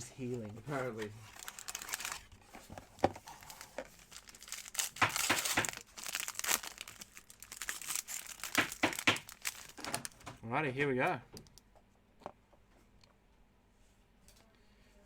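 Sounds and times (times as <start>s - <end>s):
plastic wrapping crinkling and tearing: 0.7s - 2.3s, 3.2s - 10.3s.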